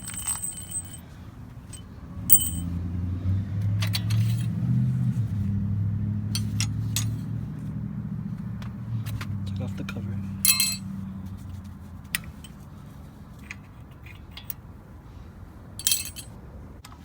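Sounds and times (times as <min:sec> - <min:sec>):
small metal parts clinking: 0:00.0 - 0:01.0, 0:01.6 - 0:02.7, 0:03.8 - 0:04.6, 0:06.3 - 0:07.3, 0:10.4 - 0:10.9, 0:12.1 - 0:12.6, 0:13.4 - 0:14.6, 0:15.8 - 0:16.4
vehicle engine running: 0:00.0 - 0:13.9.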